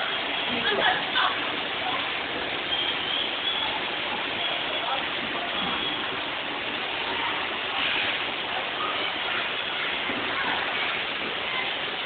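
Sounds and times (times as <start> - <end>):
heavy rain: 0.0 - 12.0
running water: 0.0 - 12.0.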